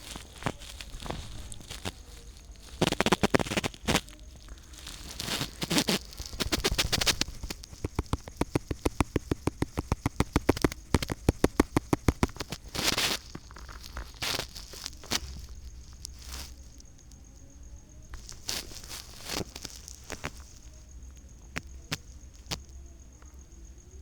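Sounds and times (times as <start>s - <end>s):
rustling noise: 0.0s - 23.4s
sharp clicks and taps: 2.7s - 16.5s.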